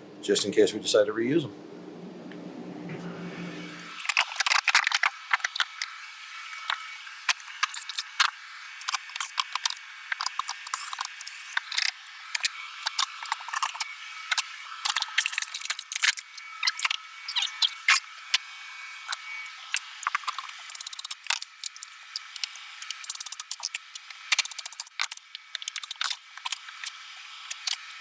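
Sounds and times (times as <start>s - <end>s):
faint high hum: 0.0s - 3.9s.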